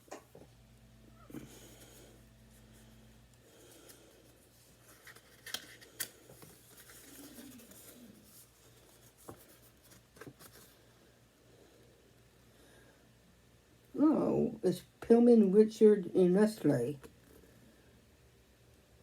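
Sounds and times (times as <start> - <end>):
paper and card rustling: 3.6 - 10.9.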